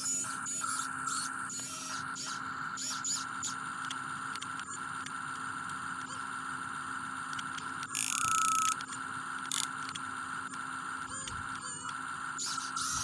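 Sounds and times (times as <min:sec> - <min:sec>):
small electric motor and pump whining: 0:00.0 - 0:13.0
scattered clicks: 0:02.9 - 0:06.2, 0:07.3 - 0:13.0.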